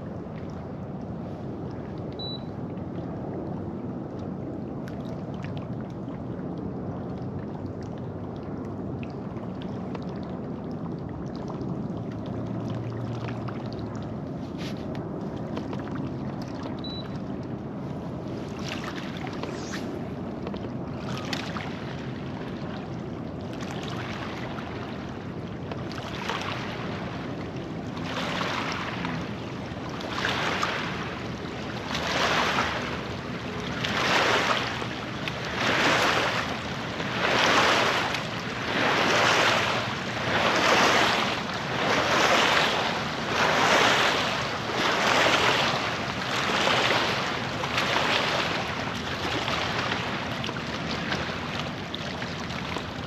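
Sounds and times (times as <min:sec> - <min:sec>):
low rush of wind and water: 0:00.0 - 0:53.0
water swashing against kayak: 0:17.9 - 0:53.0.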